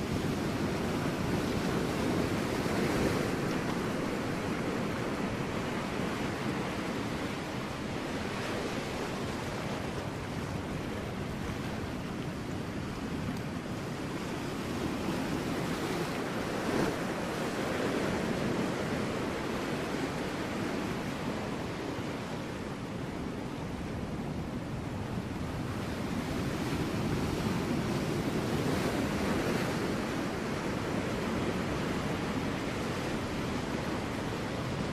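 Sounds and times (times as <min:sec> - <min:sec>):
ocean waves breaking on rocks: 0:00.0 - 0:34.9.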